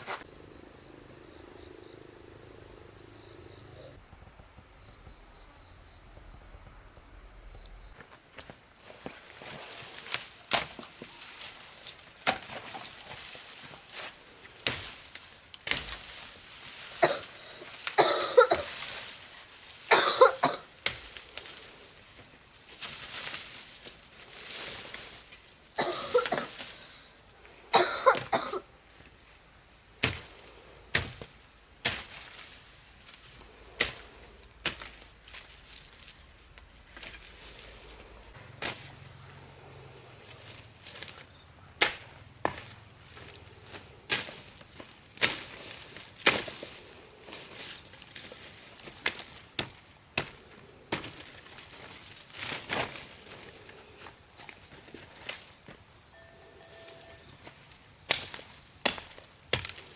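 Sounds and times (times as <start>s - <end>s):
person coughing: 17.0s - 18.7s, 19.9s - 20.7s, 25.8s - 26.6s, 27.7s - 28.7s.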